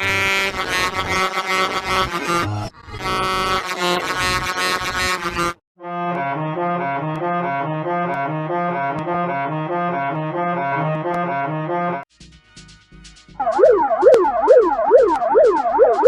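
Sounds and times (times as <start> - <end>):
low repeating note pattern: 13.4 - 16.0.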